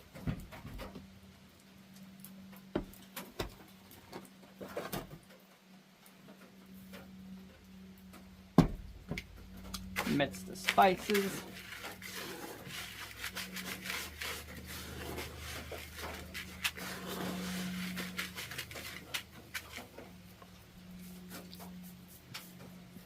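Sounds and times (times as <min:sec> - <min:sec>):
low hum: 0:05.5 - 0:23.0
scraping and rubbing spices: 0:09.6 - 0:22.7.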